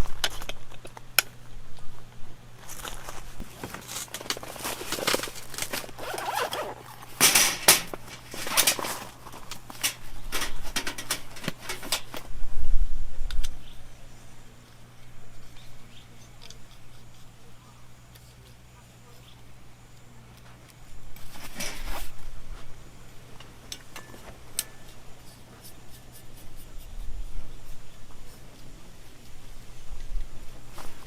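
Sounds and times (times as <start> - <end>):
gear rustling and scraping: 2.6 - 12.3, 21.2 - 22.2.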